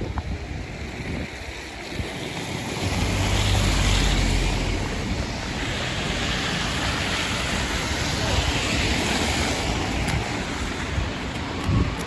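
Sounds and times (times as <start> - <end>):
road and wind noise inside car: 0.0 - 12.0.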